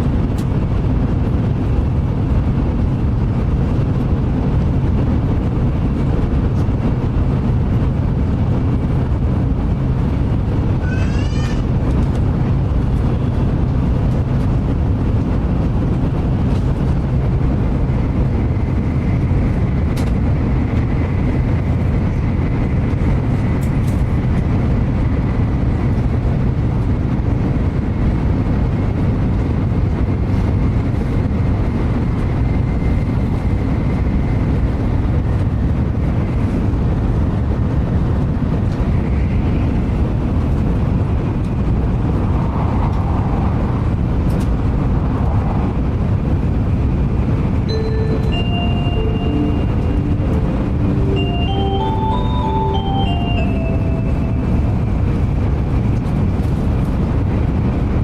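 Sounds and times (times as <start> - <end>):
train rumbling at speed: 0.0 - 58.0
faint high whine: 47.7 - 55.2.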